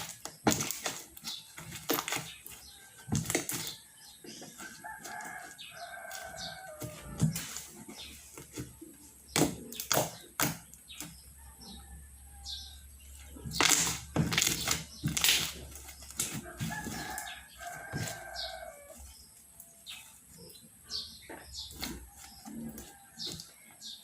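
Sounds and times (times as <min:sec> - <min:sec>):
rooster crowing: 0:04.6 - 0:07.3, 0:11.4 - 0:12.9, 0:16.4 - 0:19.1.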